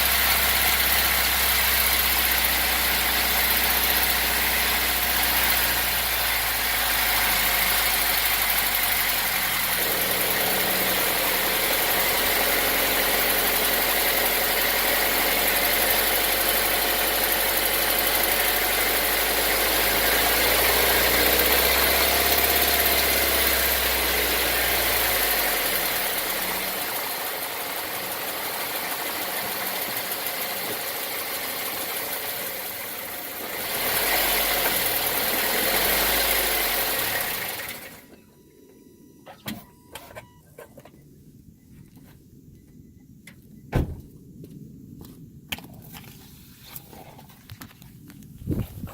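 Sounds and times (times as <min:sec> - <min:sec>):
car engine running: 0:00.0 - 0:38.2.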